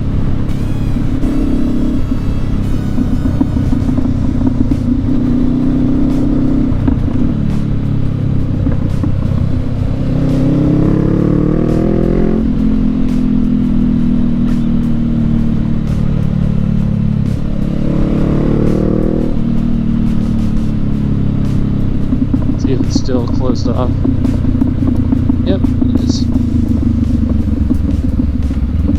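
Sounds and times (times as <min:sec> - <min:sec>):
motorcycle engine revving: 0:00.0 - 0:28.9.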